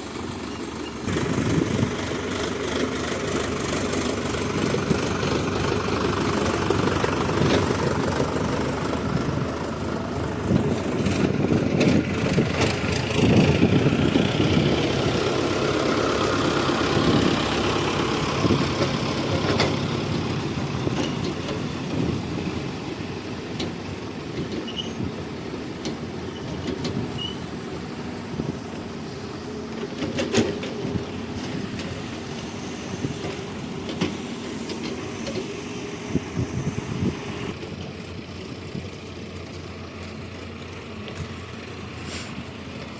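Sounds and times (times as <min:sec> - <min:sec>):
diesel machinery engine rumble: 0:00.0 - 0:42.9
machinery clanks: 0:16.2 - 0:38.2.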